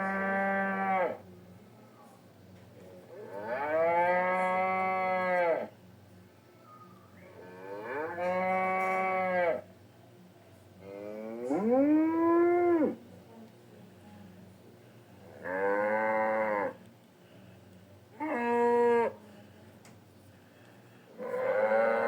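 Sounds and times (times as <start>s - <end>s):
moo-like animal calls: 21.2s - 22.0s.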